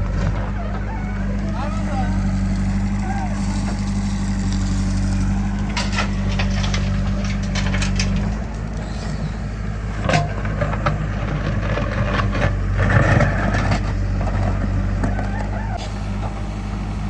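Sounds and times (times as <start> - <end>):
heavy diesel engine running: 0.0 - 17.0
knocks and clatters: 3.5 - 8.8.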